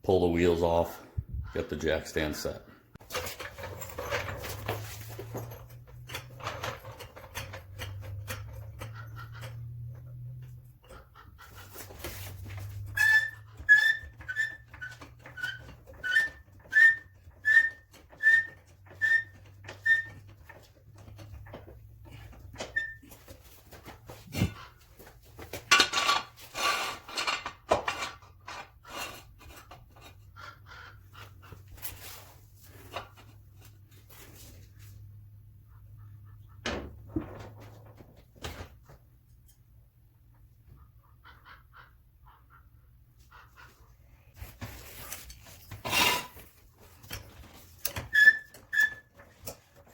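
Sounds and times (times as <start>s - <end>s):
vehicle jack squeaking: 3.0s - 24.9s, 45.5s - 49.9s.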